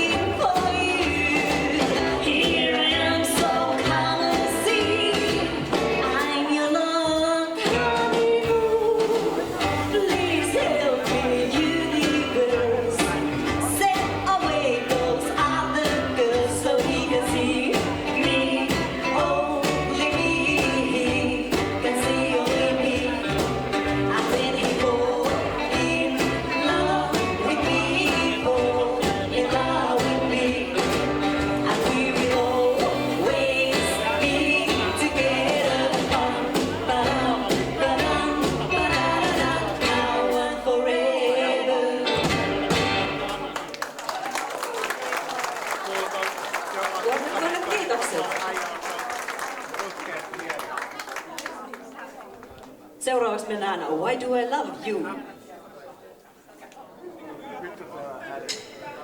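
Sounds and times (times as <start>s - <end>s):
steady drum beat: 0.0s - 6.6s, 7.6s - 40.9s
walking bass line: 0.0s - 6.6s, 7.2s - 43.7s
person singing: 0.0s - 43.4s
live rockabilly band playing: 0.0s - 55.1s.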